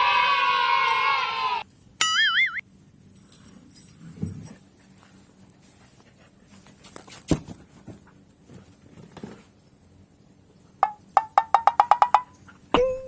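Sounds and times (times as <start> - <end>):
light pattering and scuffling: 3.1 - 9.8.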